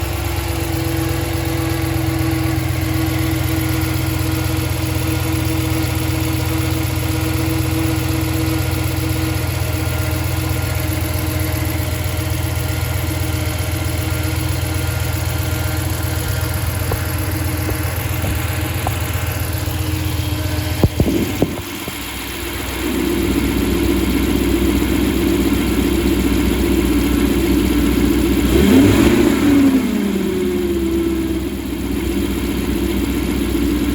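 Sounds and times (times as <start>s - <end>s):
engine knocks: 0.0s - 33.9s
engine running with whine: 0.0s - 33.9s.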